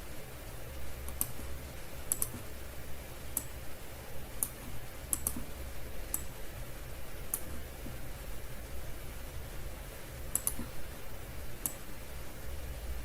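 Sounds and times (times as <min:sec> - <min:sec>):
low steady hum: 0:00.0 - 0:13.0
computer mouse or key clicks: 0:01.1 - 0:01.4, 0:02.1 - 0:02.5, 0:04.4 - 0:05.5, 0:10.3 - 0:10.7.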